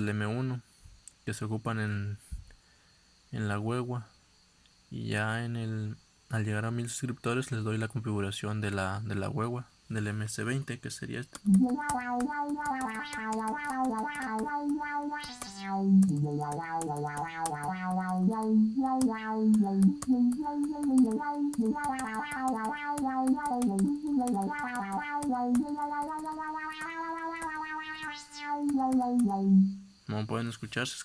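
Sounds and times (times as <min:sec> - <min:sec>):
synthesizer melody: 0:11.4 - 0:29.8.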